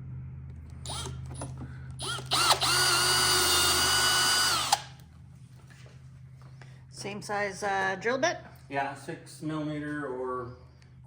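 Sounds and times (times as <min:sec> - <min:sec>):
power drill boring: 0:00.9 - 0:05.0.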